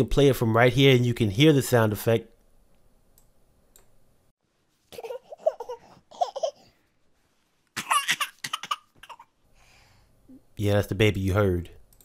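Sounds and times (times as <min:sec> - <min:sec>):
baby laughing and babbling: 0:04.9 - 0:06.7, 0:07.8 - 0:09.4.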